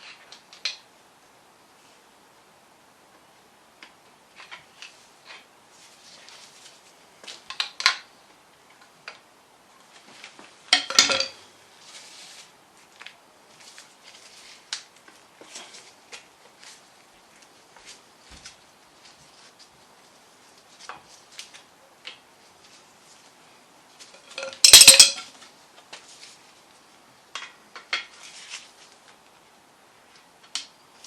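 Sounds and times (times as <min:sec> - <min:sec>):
metal tools clinking and scraping: 0:10.7 - 0:11.4, 0:24.2 - 0:25.3
ringing metallic clatter: 0:10.8 - 0:11.4, 0:24.2 - 0:25.3.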